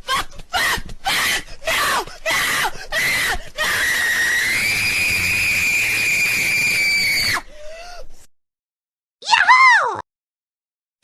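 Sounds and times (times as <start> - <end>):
high-pitched screaming: 3.7 - 7.4.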